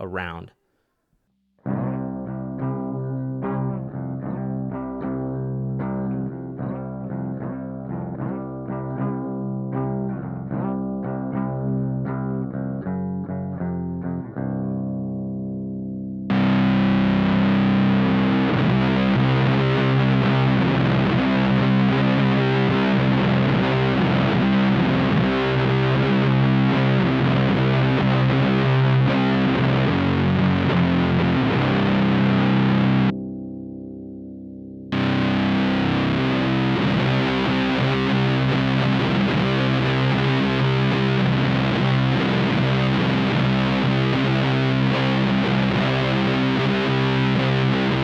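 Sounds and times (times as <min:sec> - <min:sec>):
fuzz guitar riff: 0:00.0 - 0:00.5, 0:16.3 - 0:33.5, 0:34.9 - 0:48.0
electric guitar clean tone: 0:01.7 - 0:48.0.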